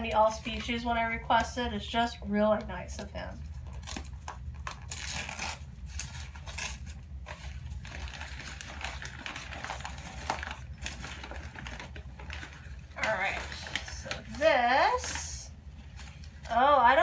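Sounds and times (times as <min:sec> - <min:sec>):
steady low hum: 0:00.0 - 0:17.0
packaging rustling and crinkling: 0:03.6 - 0:16.7.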